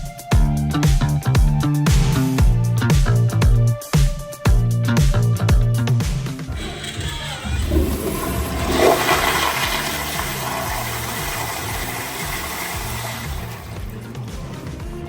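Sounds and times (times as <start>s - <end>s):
background music: 0.0s - 15.0s
toilet flushing: 6.5s - 14.8s.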